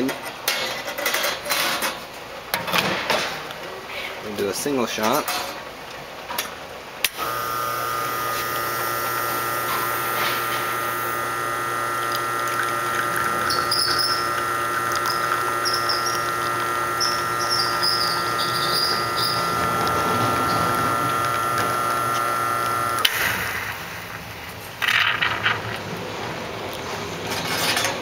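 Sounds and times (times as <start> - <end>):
espresso machine pump humming: 7.2 - 24.1.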